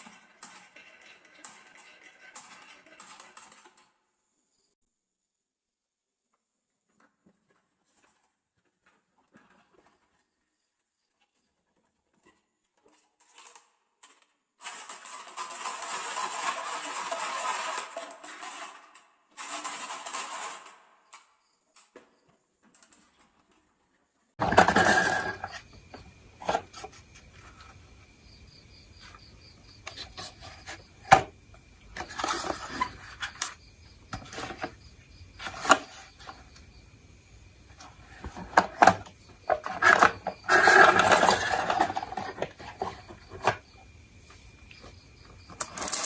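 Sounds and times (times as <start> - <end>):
toy pieces clicking and rattling: 14.6 - 18.8, 45.6 - 46.0.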